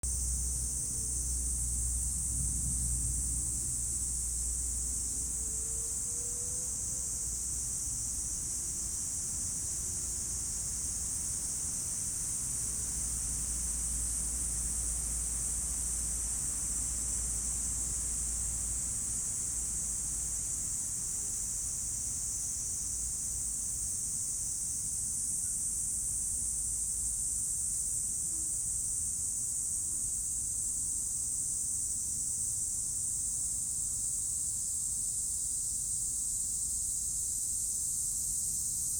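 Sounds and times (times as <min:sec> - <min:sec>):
faint low rumble: 0:00.0 - 0:05.4
cicadas buzzing: 0:00.1 - 0:26.2.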